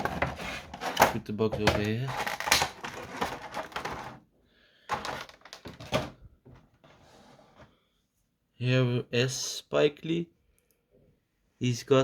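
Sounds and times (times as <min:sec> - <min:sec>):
packaging clicks and rustles: 0:00.0 - 0:04.2, 0:04.9 - 0:06.2.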